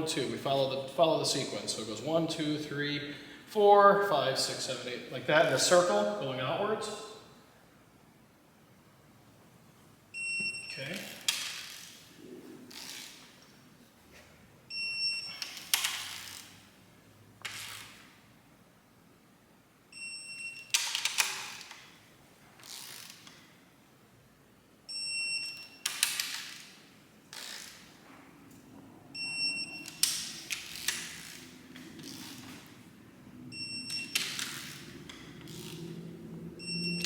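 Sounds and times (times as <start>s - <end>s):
torque wrench high beeps: 29.2s - 30.3s, 33.5s - 34.8s, 36.6s - 37.0s
ratchet clicks: 33.9s - 35.8s.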